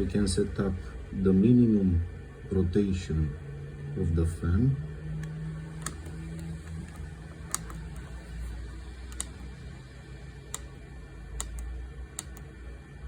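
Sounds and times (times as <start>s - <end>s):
steady low hum: 0.0s - 13.0s
control panel button clicks: 5.2s - 8.1s, 9.1s - 9.4s, 11.4s - 12.5s.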